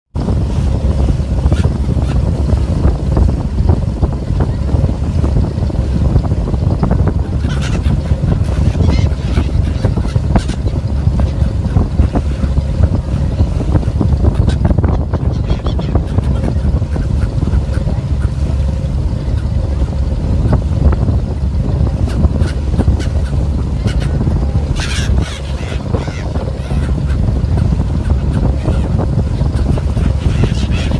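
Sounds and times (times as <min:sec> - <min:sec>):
boat engine low rumble: 0:00.1 - 0:30.9
wind buffeting microphone: 0:00.1 - 0:30.9
seagull calls: 0:07.3 - 0:12.6, 0:13.8 - 0:18.4, 0:22.0 - 0:30.9.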